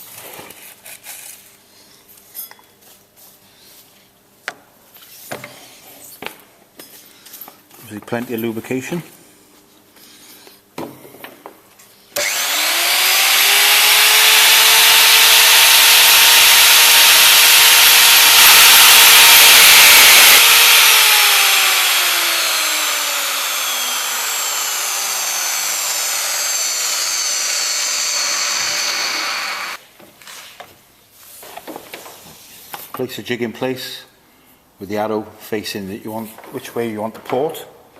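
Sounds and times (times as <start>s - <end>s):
drill grinding into metal: 12.2s - 29.8s.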